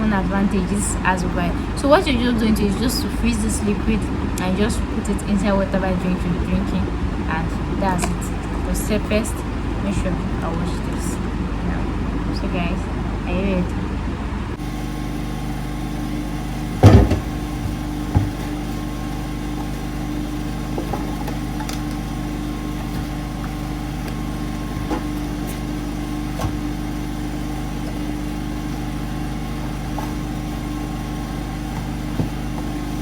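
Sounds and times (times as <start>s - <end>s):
mechanical hum with fixed tones: 0.0s - 33.0s.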